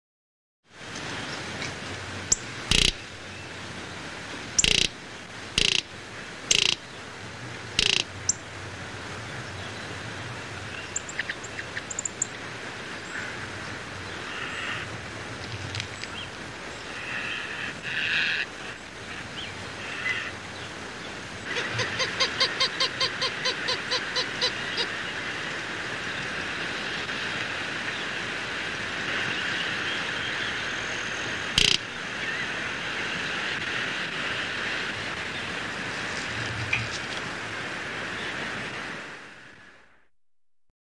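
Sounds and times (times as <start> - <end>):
background hiss: 0.7 - 39.8
roadrunner calling: 2.3 - 3.4, 4.6 - 6.9, 7.7 - 8.5, 10.7 - 12.3, 31.5 - 32.4
sharp click: 2.7 - 3.0, 4.6 - 4.9, 6.5 - 6.8, 7.8 - 8.0, 31.6 - 31.8.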